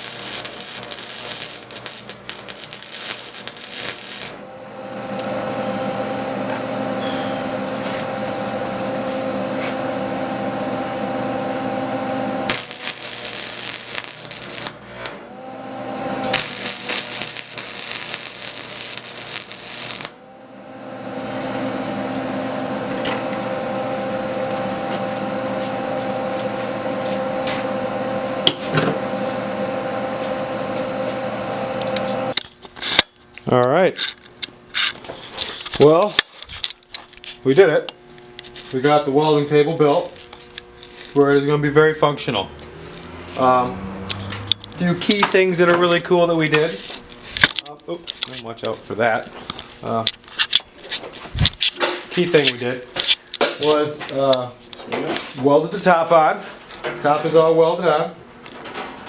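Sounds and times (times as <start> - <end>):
electric power tool on steel: 0.0 - 9.2, 11.1 - 24.0.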